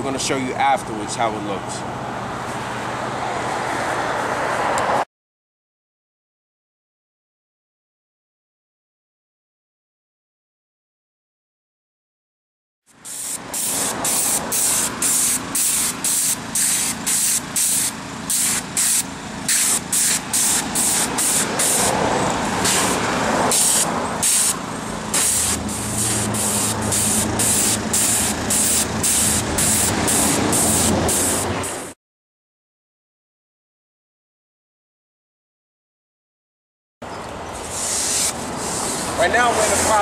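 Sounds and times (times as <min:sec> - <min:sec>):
spray bottle hissing squirts: 0:13.0 - 0:22.0, 0:22.6 - 0:24.6, 0:25.2 - 0:31.4, 0:37.7 - 0:39.0
low engine hum: 0:13.0 - 0:31.9.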